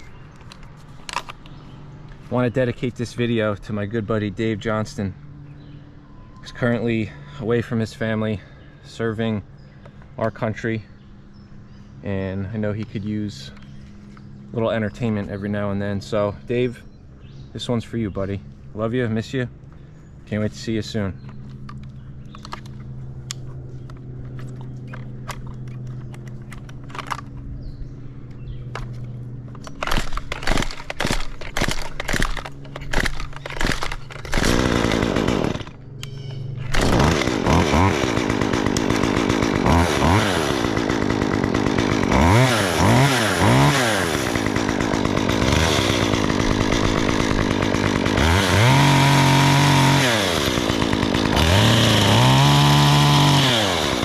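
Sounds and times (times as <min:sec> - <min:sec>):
chainsaw pops and bursts: 0:29.6 - 0:35.8, 0:36.6 - 0:54.0
chainsaw engine revving: 0:29.6 - 0:54.0.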